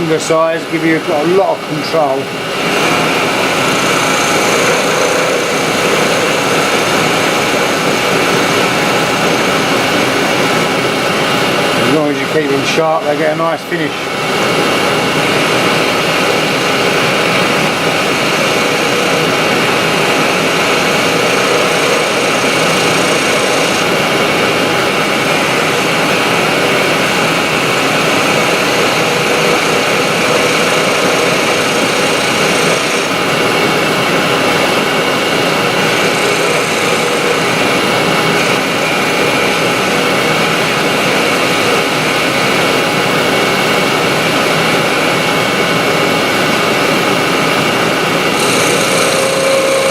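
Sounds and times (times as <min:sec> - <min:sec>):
wood lathe motor whine: 0:00.0 - 0:49.9
chisel shaving wood: 0:02.7 - 0:11.2, 0:16.2 - 0:40.0, 0:48.3 - 0:49.9.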